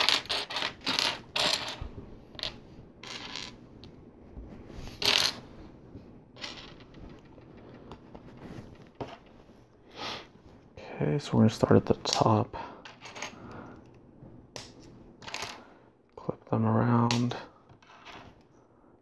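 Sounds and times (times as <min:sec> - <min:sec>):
plastic pieces clicking and rattling: 0:00.0 - 0:01.8.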